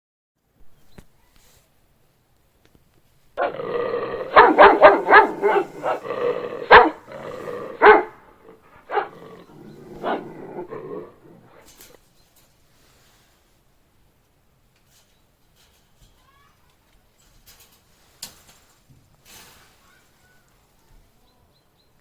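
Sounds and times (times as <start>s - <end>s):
dog growling: 3.4s - 11.9s
dog barking sharply: 4.3s - 6.0s, 6.6s - 7.0s, 7.8s - 8.2s, 8.9s - 9.2s.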